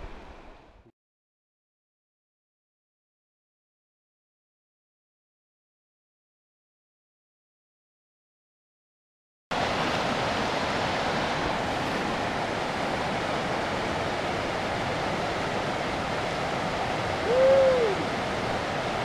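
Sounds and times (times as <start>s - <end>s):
river water rushing: 0.0s - 0.8s, 9.5s - 19.0s.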